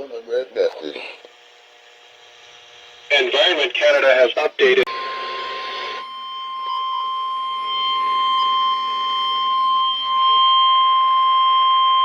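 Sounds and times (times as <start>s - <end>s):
steady alarm tone: 4.9s - 12.0s.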